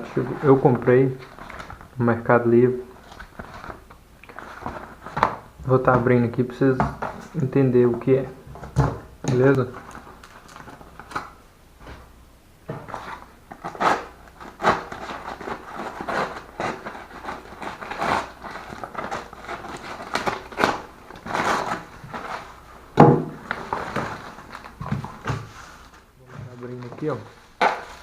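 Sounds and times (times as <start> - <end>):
packaging rustling and crinkling: 0.0 - 2.0, 2.8 - 12.1, 12.7 - 28.0
loud knock: 23.0 - 23.4.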